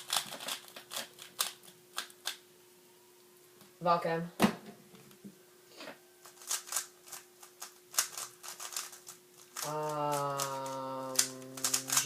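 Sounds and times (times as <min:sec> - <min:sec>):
puzzle cube layers clacking: 0:06.3 - 0:12.0.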